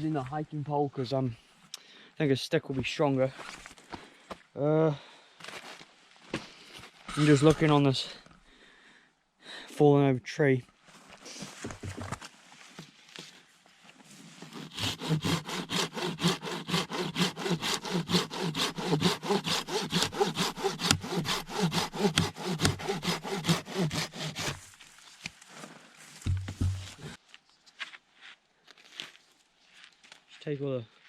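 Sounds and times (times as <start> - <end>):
hand saw cutting wood: 14.5 - 24.8, 26.3 - 27.2.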